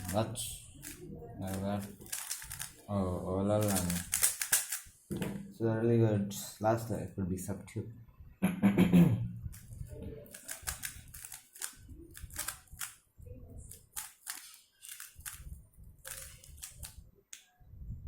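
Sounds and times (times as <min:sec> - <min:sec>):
speed cube clacking turns: 0:00.8 - 0:02.8, 0:03.6 - 0:04.9, 0:09.6 - 0:13.0, 0:13.7 - 0:17.0.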